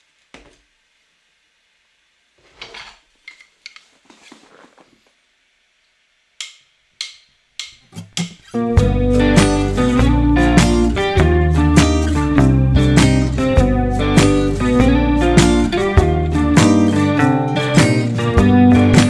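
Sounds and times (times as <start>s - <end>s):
music: 7.1s - 19.0s.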